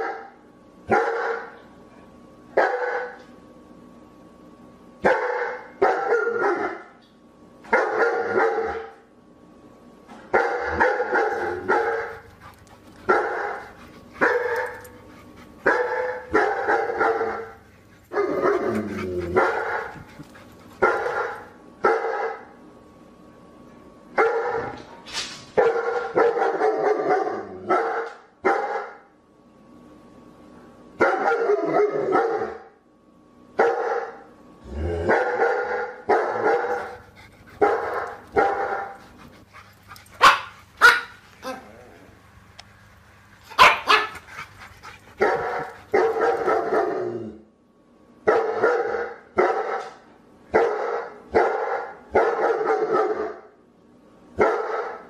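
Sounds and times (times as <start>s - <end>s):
dog barking: 0.9s - 1.6s, 2.6s - 3.2s, 5.0s - 6.9s, 7.7s - 9.0s, 10.3s - 12.2s, 13.1s - 14.9s, 15.6s - 18.7s, 20.8s - 22.5s, 24.2s - 24.8s, 25.6s - 29.0s, 31.0s - 32.7s, 33.6s - 34.2s, 35.1s - 37.0s, 37.6s - 39.0s, 40.2s - 41.6s, 43.5s - 44.2s, 45.2s - 46.9s, 48.3s - 53.5s, 54.4s - 55.0s.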